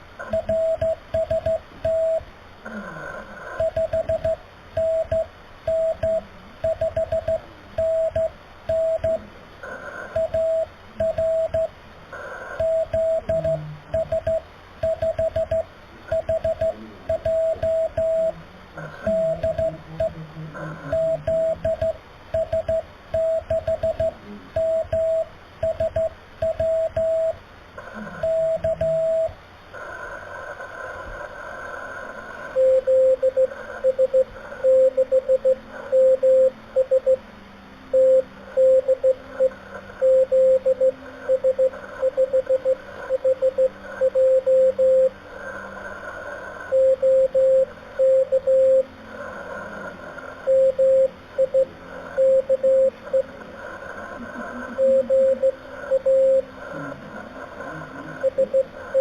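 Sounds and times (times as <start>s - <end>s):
radio receiver hiss: 0.0s - 22.4s, 23.0s - 59.0s
morse code tone: 3.6s - 9.2s, 12.6s - 18.4s, 19.0s - 20.2s, 20.9s - 27.4s, 28.2s - 29.3s, 32.6s - 37.2s, 37.9s - 45.1s, 46.7s - 48.9s, 50.5s - 53.3s, 54.5s - 56.5s.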